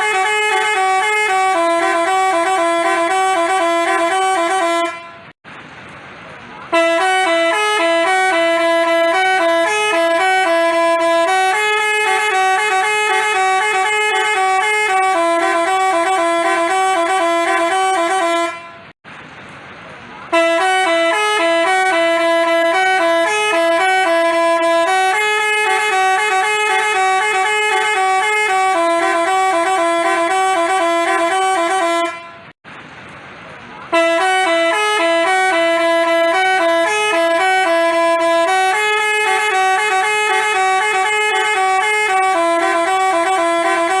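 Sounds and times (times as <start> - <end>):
bus horn playing a melody: 0.0 - 5.4, 6.7 - 19.0, 20.3 - 32.6, 33.9 - 44.0.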